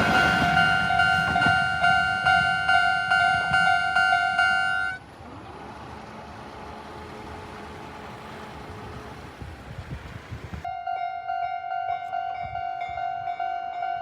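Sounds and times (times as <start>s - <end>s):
level crossing alarm ringing: 0.0s - 5.0s, 10.7s - 14.0s.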